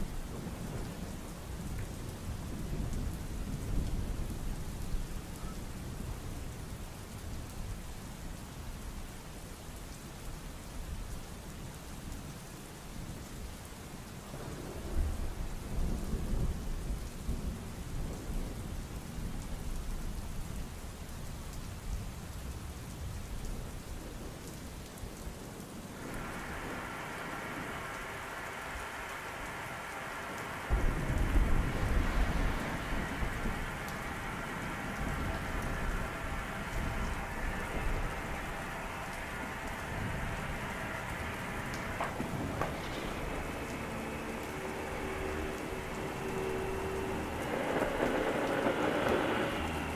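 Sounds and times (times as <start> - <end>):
thunder rolling: 0.0 - 5.0, 26.0 - 49.9
heavy rain: 0.0 - 49.9.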